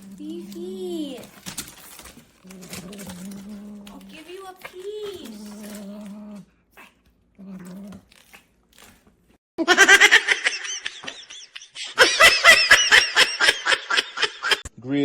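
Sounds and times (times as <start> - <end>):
person laughing hard: 9.6 - 14.7.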